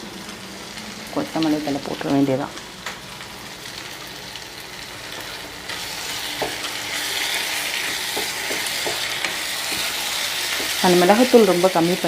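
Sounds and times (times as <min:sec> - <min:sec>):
food sizzling in a pan: 0:00.0 - 0:12.0
spatula scraping a pan: 0:05.2 - 0:11.4.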